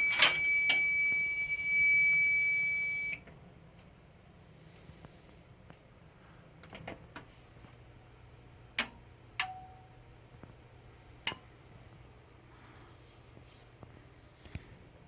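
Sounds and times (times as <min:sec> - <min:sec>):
sharp clicks from alarm panel: 0:00.0 - 0:03.2, 0:08.8 - 0:09.8, 0:11.2 - 0:11.5
steady low hum: 0:00.0 - 0:15.0.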